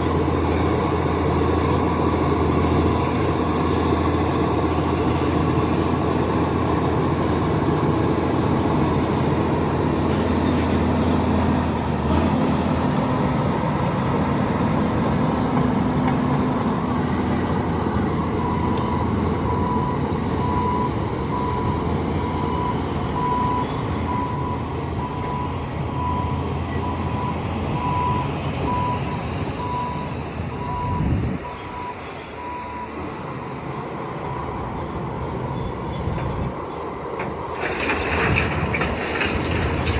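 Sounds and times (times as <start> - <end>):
heavy machine diesel engine: 0.0 - 39.9
reversing alarm beeping: 17.4 - 33.5.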